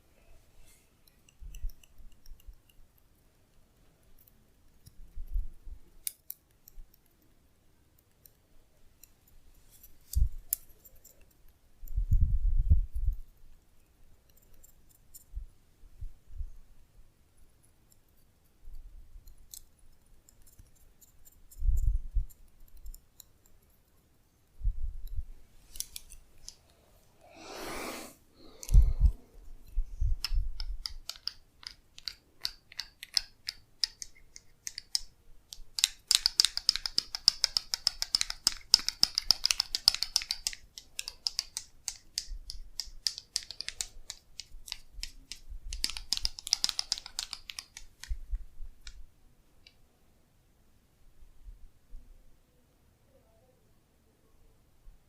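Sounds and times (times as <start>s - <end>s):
hissing rush: 27.2s - 29.2s
sharp clicks: 28.6s - 49.0s.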